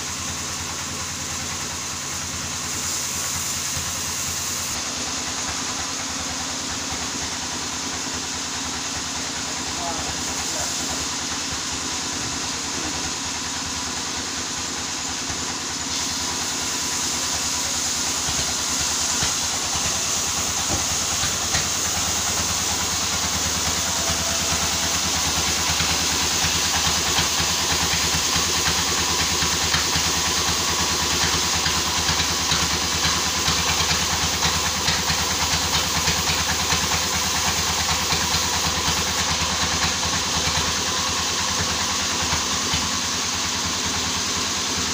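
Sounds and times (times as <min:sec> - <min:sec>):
sawmill engine rumble: 0:00.0 - 0:44.9
broad hiss: 0:14.9 - 0:44.9.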